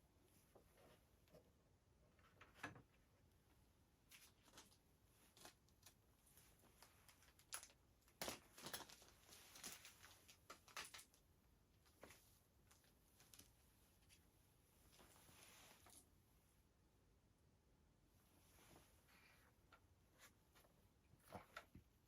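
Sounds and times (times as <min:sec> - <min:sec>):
packaging rustling: 0:06.8 - 0:11.2.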